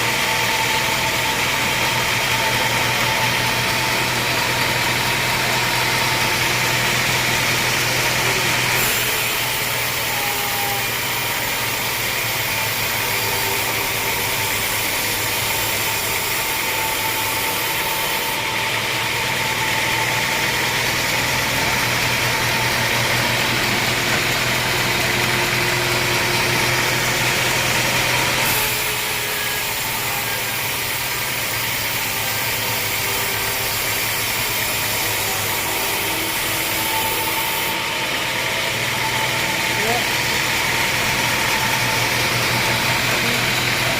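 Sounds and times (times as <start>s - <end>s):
sawmill machinery motor hum: 0.0s - 43.9s.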